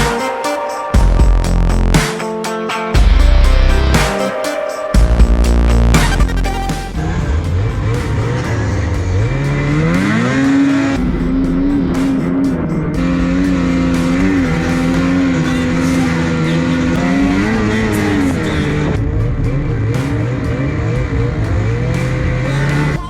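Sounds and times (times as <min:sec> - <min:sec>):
snowmobile engine revving: 0:05.7 - 0:23.0.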